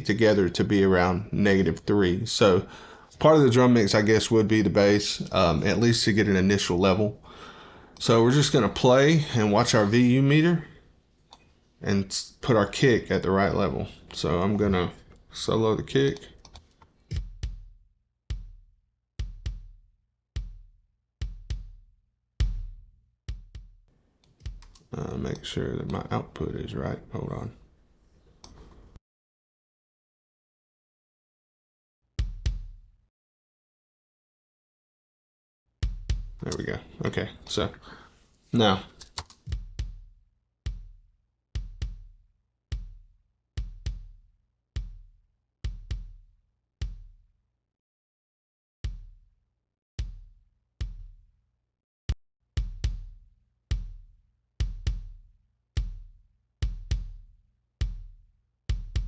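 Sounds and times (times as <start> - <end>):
kick drum hits: 17.1 - 19.8, 20.4 - 23.8, 32.2 - 32.8, 35.8 - 36.4, 39.5 - 44.2, 44.8 - 45.1, 45.7 - 46.2, 46.8 - 47.2, 48.9 - 49.2, 50.0 - 51.2, 52.6 - 59.0.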